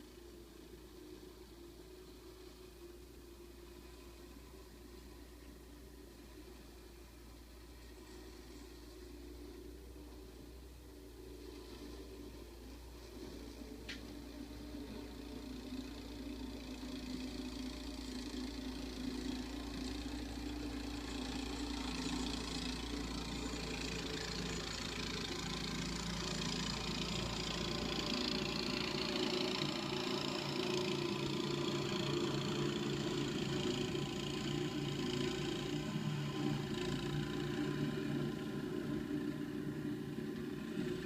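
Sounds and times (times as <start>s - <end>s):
motor engine running: 11.4s - 41.0s.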